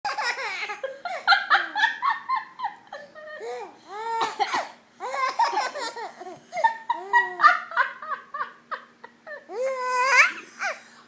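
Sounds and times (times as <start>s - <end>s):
baby laughing: 0.1s - 2.0s, 5.0s - 7.7s, 9.3s - 10.8s.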